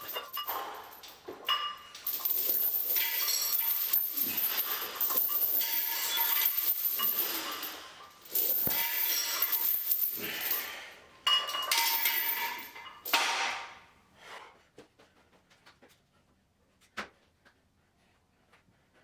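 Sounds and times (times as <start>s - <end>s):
metal weights clanking: 0.0s - 10.6s, 11.2s - 13.8s.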